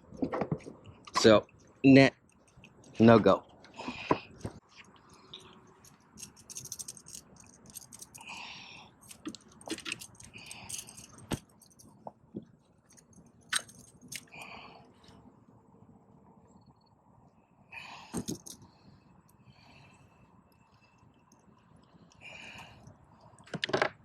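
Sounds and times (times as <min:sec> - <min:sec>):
handling clicks and knocks: 0:09.0 - 0:14.3, 0:18.2 - 0:18.6.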